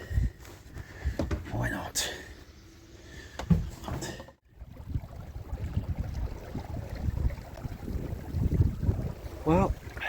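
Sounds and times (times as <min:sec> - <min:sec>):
wind buffeting microphone: 0:04.5 - 0:10.0.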